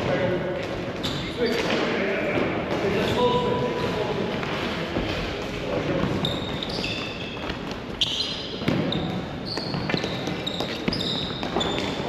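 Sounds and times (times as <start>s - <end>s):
shoes squeaking: 6.0s - 12.0s.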